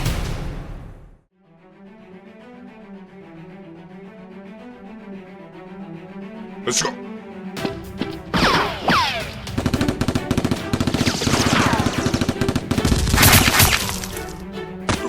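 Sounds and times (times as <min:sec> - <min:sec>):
machine-gun fire: 0:09.5 - 0:14.2.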